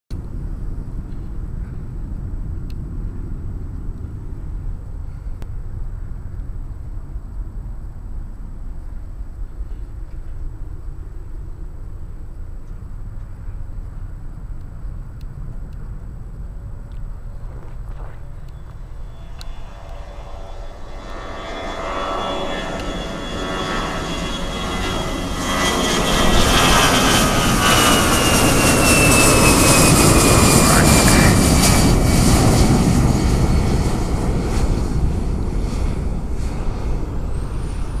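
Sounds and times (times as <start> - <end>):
high jet engine whine: 0.1 - 38.0
jet airliner taking off: 17.1 - 38.0.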